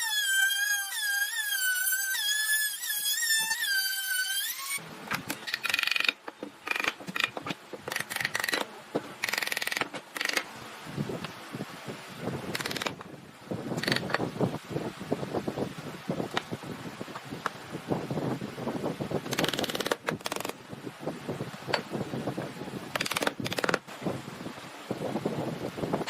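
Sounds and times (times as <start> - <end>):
woodworking tool whining bursts: 0.0 - 7.3.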